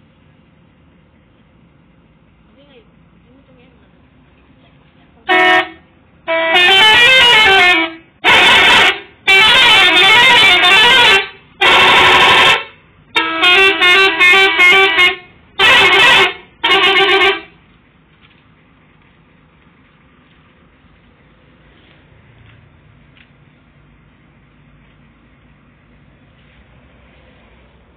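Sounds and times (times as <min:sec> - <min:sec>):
musical bus horn blasts: 0:05.2 - 0:17.6.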